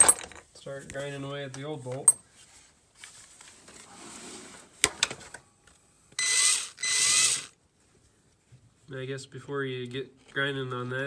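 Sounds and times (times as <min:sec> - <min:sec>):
electric drill whining: 0:06.2 - 0:07.6.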